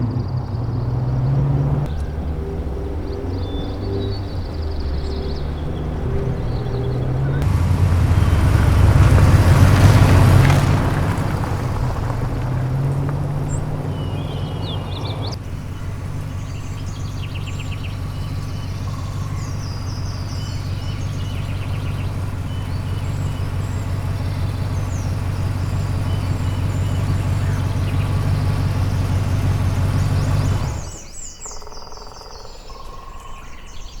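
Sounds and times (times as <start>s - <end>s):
motor humming: 0.0s - 19.4s
birds chirping: 0.0s - 34.0s.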